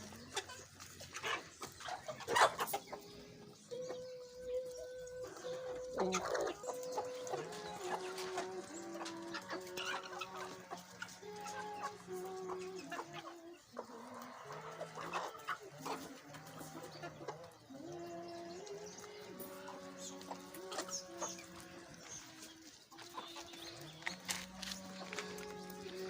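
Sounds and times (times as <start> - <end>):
chickens clucking: 0.0 - 26.0
chicks peeping: 0.0 - 26.0.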